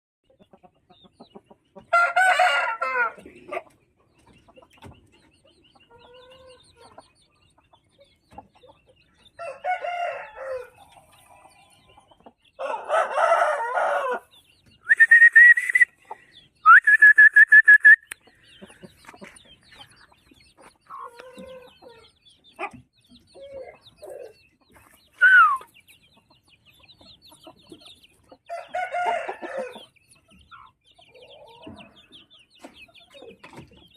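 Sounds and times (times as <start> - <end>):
chickens clucking: 0.2 - 33.9
rooster crowing: 1.9 - 3.2, 9.4 - 10.8, 12.6 - 14.3, 28.5 - 29.8.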